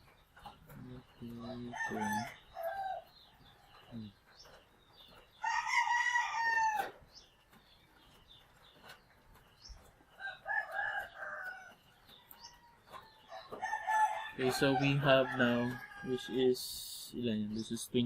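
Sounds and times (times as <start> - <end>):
rooster crowing: 1.7 - 3.0, 5.4 - 7.0, 10.2 - 11.7, 13.6 - 16.4.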